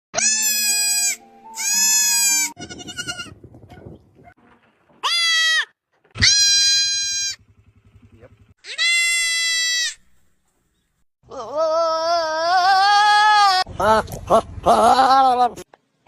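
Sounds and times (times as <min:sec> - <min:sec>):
comic animal bleats: 0:00.2 - 0:03.3, 0:05.0 - 0:07.4, 0:08.6 - 0:10.0, 0:11.2 - 0:15.6.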